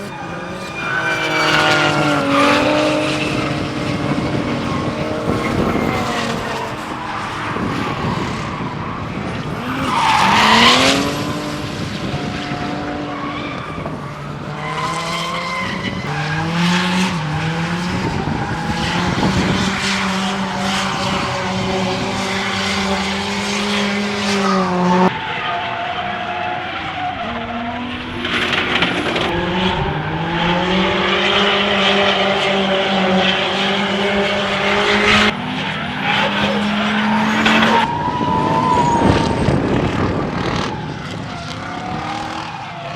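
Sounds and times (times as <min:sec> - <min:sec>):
race car engines revving: 0:00.0 - 0:42.9
tyres squealing: 0:29.3 - 0:37.9.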